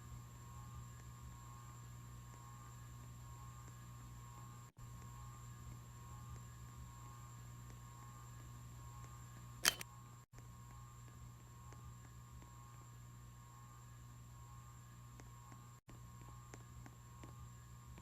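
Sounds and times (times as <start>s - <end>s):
sharp click: 9.6s - 9.9s.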